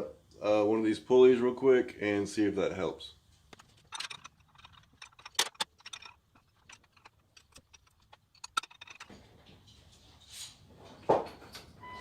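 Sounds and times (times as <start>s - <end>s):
hand tools clinking on metal: 3.9s - 9.3s.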